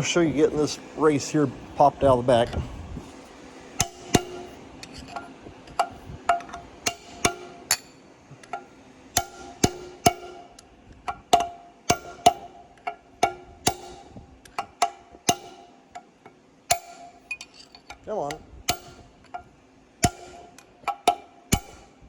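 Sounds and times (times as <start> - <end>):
hammer striking metal: 3.8 - 5.2, 5.8 - 15.8, 16.7 - 22.0.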